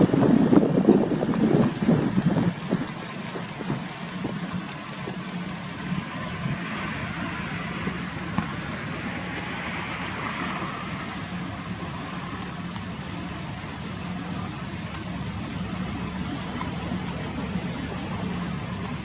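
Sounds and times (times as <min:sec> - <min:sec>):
road traffic hum: 0:00.0 - 0:19.0
vehicle passing: 0:06.3 - 0:12.5.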